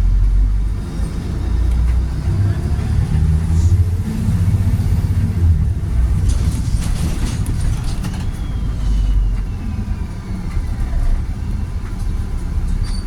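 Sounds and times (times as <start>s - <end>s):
bus diesel engine rumble: 0.0s - 13.0s
rattles: 5.8s - 9.1s.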